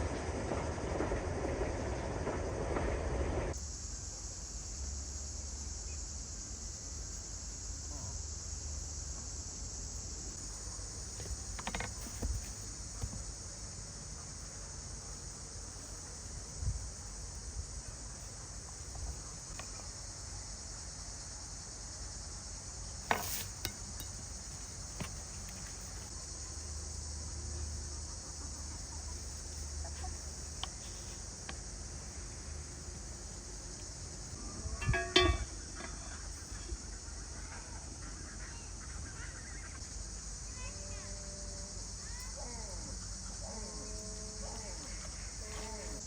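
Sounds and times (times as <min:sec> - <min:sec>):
insect chorus chirring: 0:03.5 - 0:46.0
cooking utensils clinking on pots: 0:34.8 - 0:36.0.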